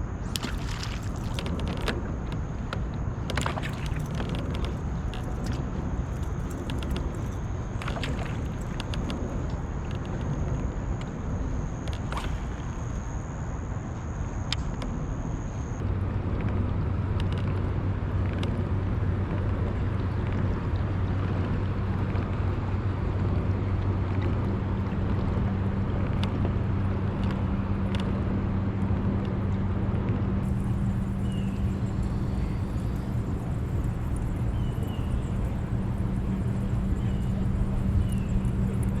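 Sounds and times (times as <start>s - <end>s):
low engine hum: 0.0s - 39.0s
rumbling background noise: 0.0s - 39.0s
higher hum: 30.4s - 39.0s.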